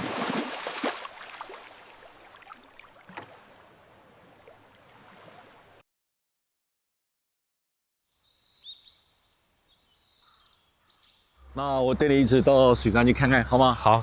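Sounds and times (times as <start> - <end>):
water noise: 0.0 - 5.8
faint outdoor ambience: 8.1 - 14.0
high bird chirp: 8.2 - 11.6.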